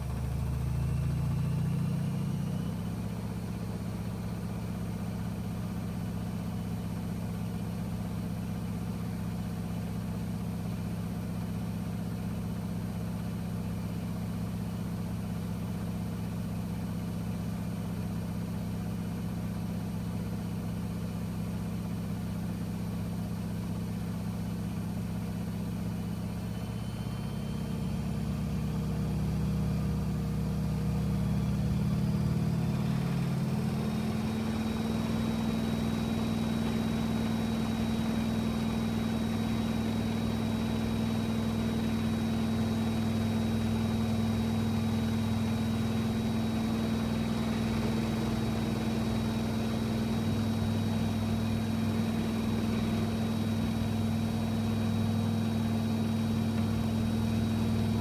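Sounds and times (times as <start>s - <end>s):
washing machine spinning: 33.8s - 58.0s
high whine: 41.3s - 58.0s.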